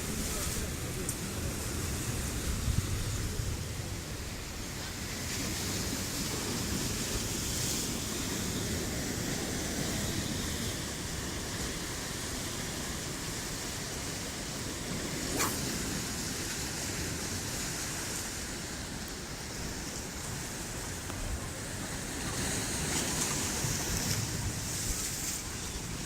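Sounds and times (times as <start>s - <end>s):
sea surf: 0.0s - 26.0s
wind: 0.0s - 26.0s
wind rumbling on microphone: 0.0s - 26.0s
sharp click: 15.4s - 15.6s.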